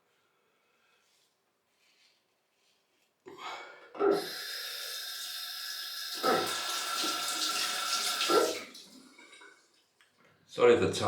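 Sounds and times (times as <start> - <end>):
sink tap running: 5.0 - 8.8.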